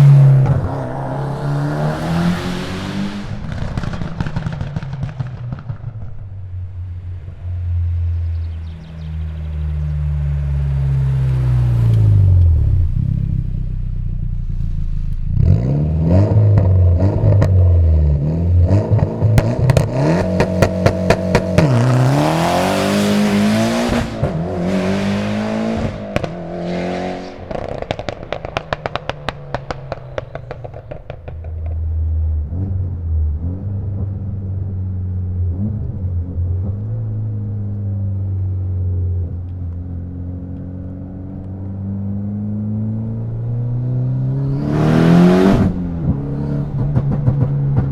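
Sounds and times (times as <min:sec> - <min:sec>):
turbocharged car engine revving: 0:00.0 - 0:05.6, 0:08.6 - 0:34.7, 0:40.8 - 0:47.9
exhaust cracks and bangs: 0:03.2 - 0:06.6, 0:19.2 - 0:26.6, 0:27.3 - 0:32.2.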